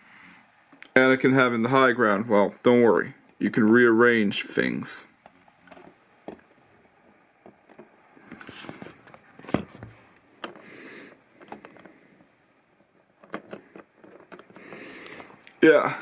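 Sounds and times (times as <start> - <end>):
soft rubbing and rustling: 6.3 - 15.6
plastic pieces clicking: 13.2 - 15.6.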